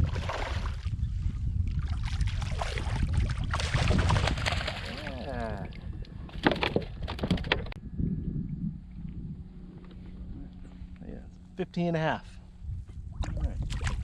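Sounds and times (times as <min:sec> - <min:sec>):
wind rumble on microphone: 0:00.0 - 0:14.0
water splashing: 0:01.9 - 0:05.8.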